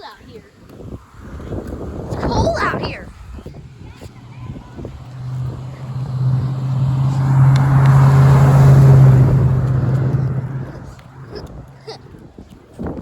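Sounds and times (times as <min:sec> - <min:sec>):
vehicle driving past: 0:01.0 - 0:02.3, 0:04.0 - 0:11.9.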